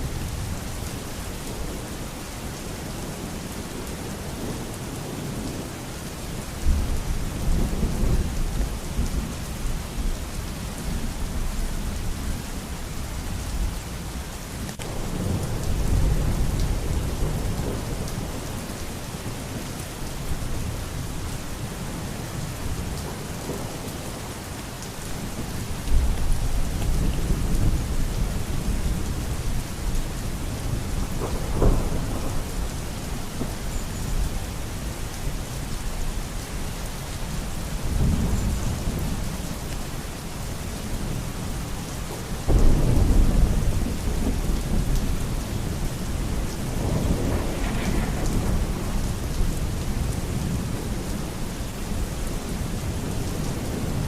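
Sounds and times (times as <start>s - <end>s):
heavy rain: 0.0s - 54.0s
rolling thunder: 25.1s - 33.6s, 42.4s - 51.3s.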